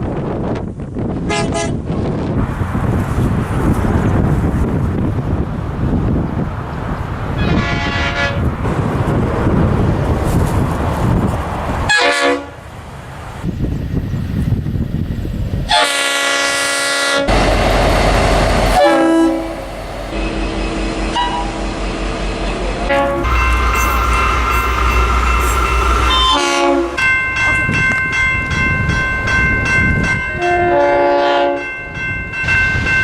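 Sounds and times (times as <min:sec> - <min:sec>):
trains rumbling: 0:00.0 - 0:33.0
train horn blasts: 0:01.3 - 0:01.8, 0:07.4 - 0:08.5, 0:11.9 - 0:12.6, 0:15.7 - 0:17.4, 0:18.6 - 0:21.7, 0:22.9 - 0:27.7, 0:30.3 - 0:31.7.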